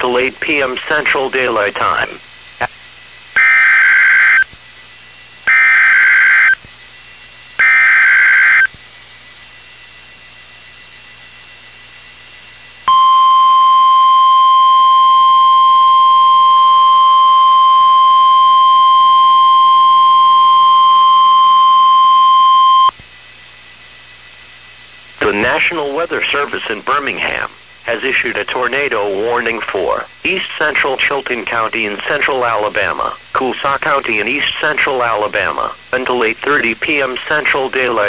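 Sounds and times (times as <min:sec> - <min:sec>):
steady single-pitched alarm tone: 0:01.9 - 0:25.6
digital header data bursts: 0:03.4 - 0:04.5, 0:05.5 - 0:06.6, 0:07.6 - 0:08.7.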